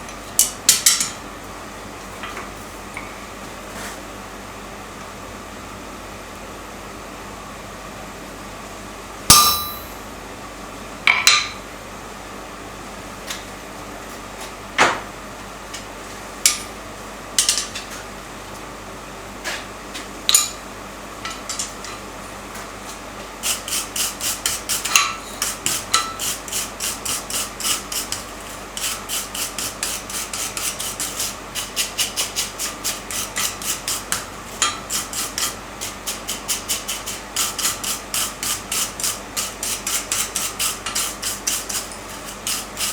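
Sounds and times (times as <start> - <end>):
hammer blows on steel: 9.3 - 10.0.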